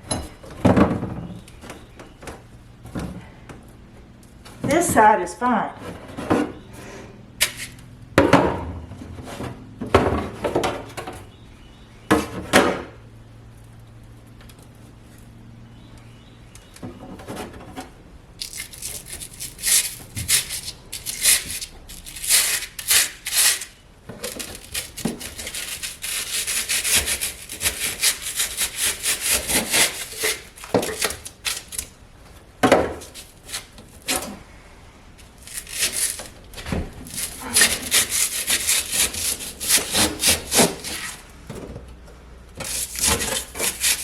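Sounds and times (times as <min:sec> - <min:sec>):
wood scraping: 0:16.8 - 0:31.9, 0:35.2 - 0:41.3, 0:42.6 - 0:44.0.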